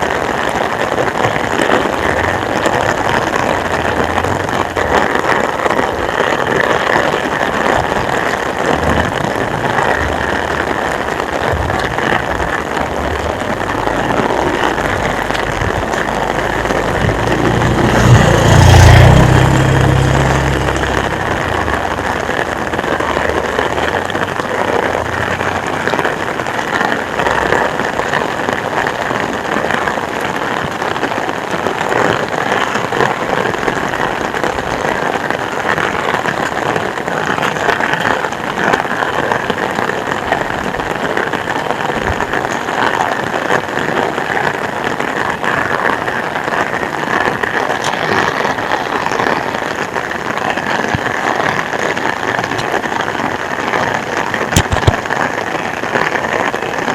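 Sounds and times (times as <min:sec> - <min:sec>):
heavy rain falling: 0:00.0 - 0:56.9
low engine rumble: 0:07.8 - 0:27.8.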